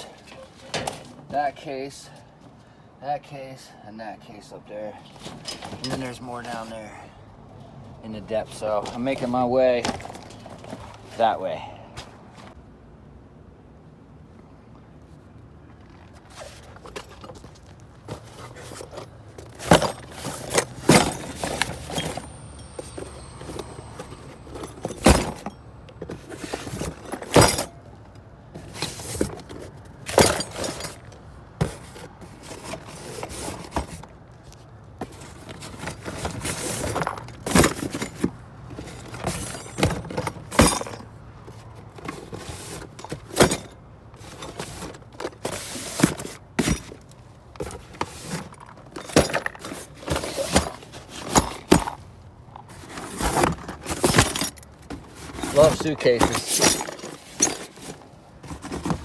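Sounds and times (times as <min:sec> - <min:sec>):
metal hardware clanking and rattling: 0:05.2 - 0:06.4, 0:18.2 - 0:28.0, 0:28.6 - 0:31.2, 0:35.9 - 0:41.2, 0:48.0 - 0:52.0, 0:52.6 - 0:59.0.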